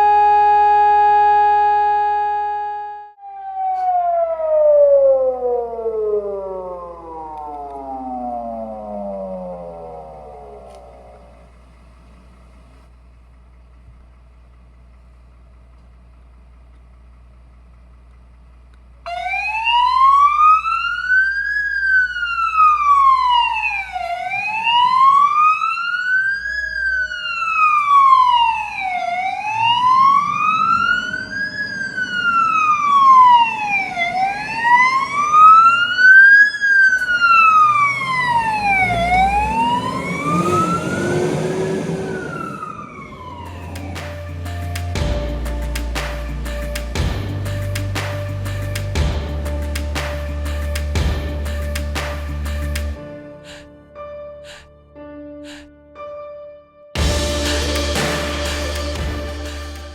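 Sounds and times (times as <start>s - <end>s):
fire engine siren wailing: 0.0s - 11.5s, 19.1s - 46.8s
low engine rumble: 5.5s - 21.0s, 37.0s - 53.0s, 57.0s - 59.9s.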